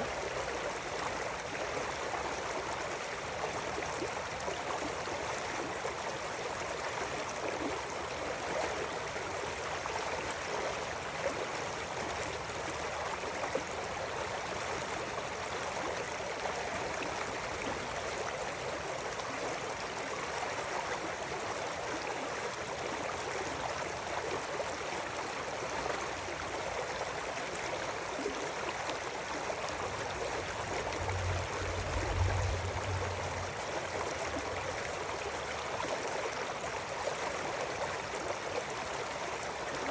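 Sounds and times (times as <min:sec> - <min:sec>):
river water rushing and gurgling: 0:00.0 - 0:39.9
low rumble: 0:30.4 - 0:34.7.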